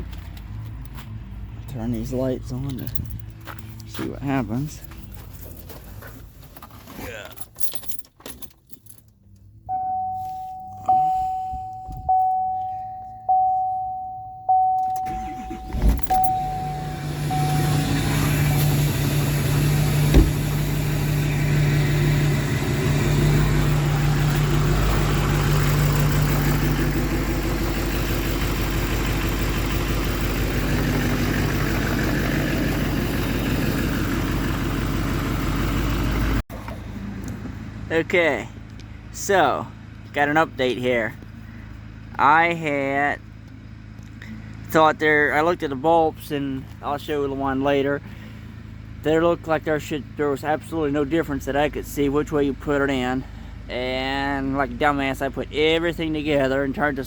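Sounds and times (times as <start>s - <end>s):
diesel engine cranking and idling: 0.0s - 57.0s
dashboard warning chime: 9.7s - 18.8s.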